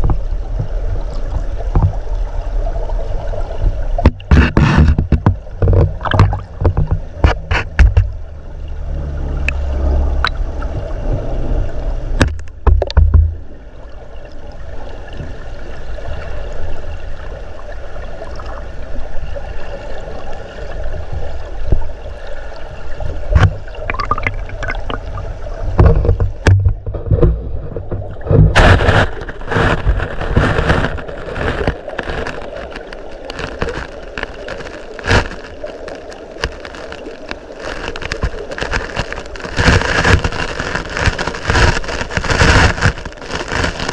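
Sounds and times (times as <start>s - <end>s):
underwater river rumble and gurgle: 0.0s - 43.9s
sharp clicks and knocks: 4.0s - 8.2s, 12.2s - 13.4s, 23.4s - 25.2s, 25.8s - 32.4s.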